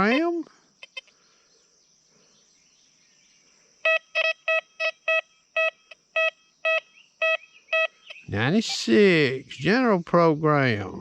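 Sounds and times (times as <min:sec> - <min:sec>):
metal detector short beeps: 0:03.9 - 0:08.9.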